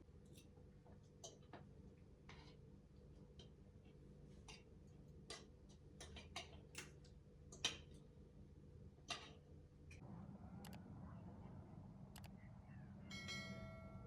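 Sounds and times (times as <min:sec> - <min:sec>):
faint steady hum: 0:09.9 - 0:14.0.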